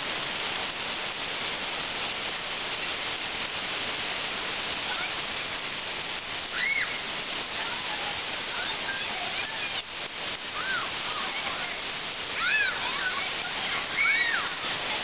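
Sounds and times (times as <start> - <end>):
hail falling: 3.8 - 15.0.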